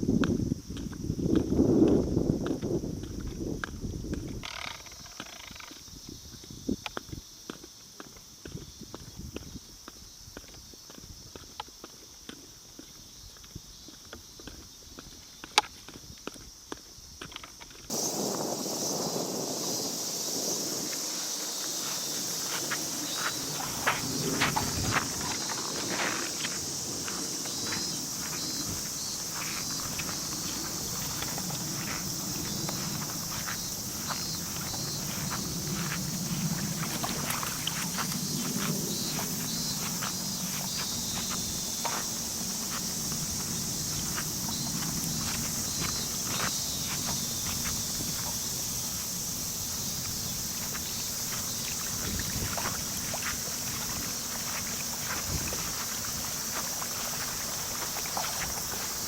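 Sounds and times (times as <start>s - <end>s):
wind rumble on microphone: 0.0s - 5.0s, 5.8s - 7.3s, 8.4s - 9.8s, 17.9s - 59.0s
high buzz of insects: 0.0s - 59.0s
lake water splashing and lapping: 17.9s - 59.0s
steady high hiss: 17.9s - 59.0s
footsteps: 20.3s - 59.0s.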